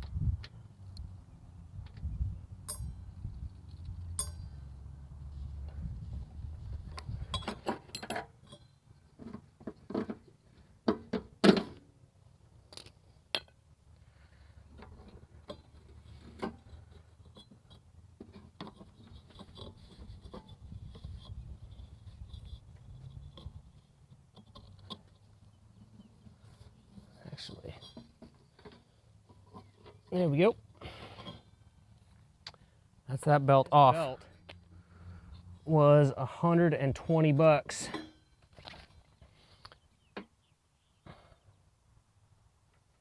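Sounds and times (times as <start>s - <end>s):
metal tools clinking and clanking: 3.7s - 4.6s, 7.2s - 10.2s, 15.4s - 23.7s, 26.6s - 30.1s, 30.8s - 31.6s, 37.8s - 39.2s.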